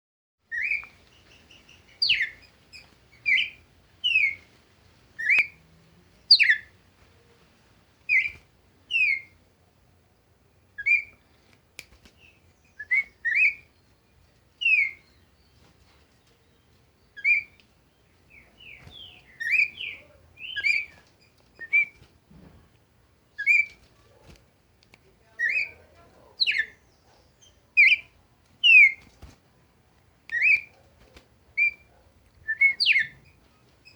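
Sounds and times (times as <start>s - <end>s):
songbird whistling: 0.5s - 0.9s, 1.6s - 2.4s, 3.3s - 4.4s, 5.2s - 5.6s, 6.3s - 6.7s, 8.1s - 9.3s, 12.7s - 13.7s, 14.6s - 15.2s, 17.2s - 17.6s, 18.3s - 21.0s, 21.6s - 22.0s, 23.4s - 23.7s, 30.3s - 30.7s, 31.6s - 33.3s.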